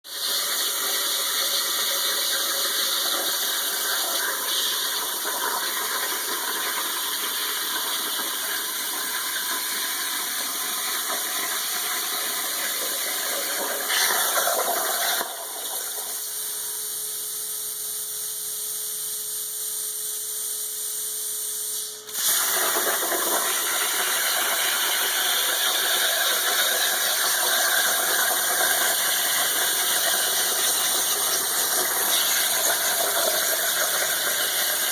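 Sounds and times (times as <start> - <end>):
plasma cutter hissing rush: 0.2 - 5.6, 12.5 - 16.7, 28.6 - 34.9.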